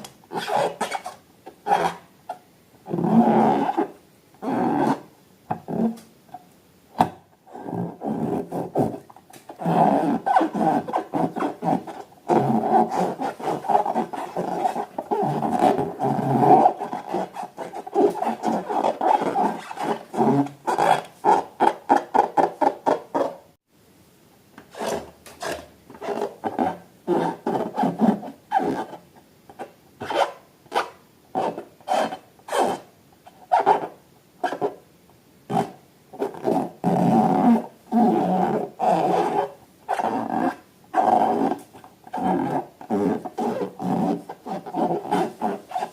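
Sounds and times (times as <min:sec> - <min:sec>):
rubber balloons squeaking when rubbed: 0:00.0 - 0:02.0, 0:07.5 - 0:23.4, 0:24.7 - 0:29.0, 0:35.5 - 0:45.9.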